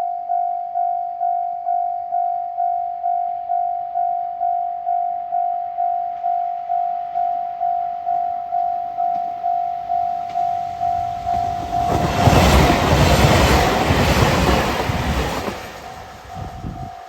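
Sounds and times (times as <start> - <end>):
level crossing warning bell: 4.9 - 17.0
train passing: 8.7 - 17.0.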